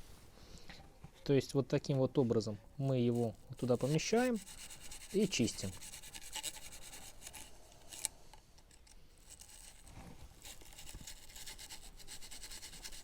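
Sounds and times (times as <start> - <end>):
bristle brush scrubbing fan: 3.0 - 8.0, 9.2 - 13.0.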